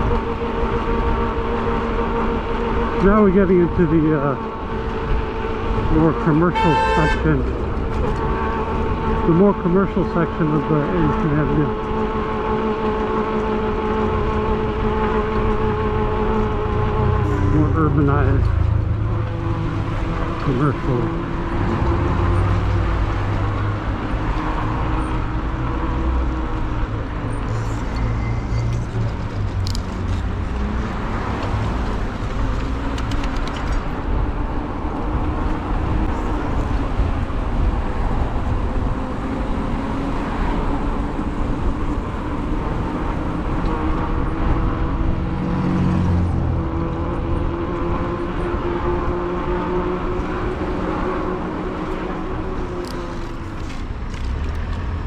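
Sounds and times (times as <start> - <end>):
cars passing: 0.0 - 55.0
wind rumble on microphone: 11.5 - 55.0.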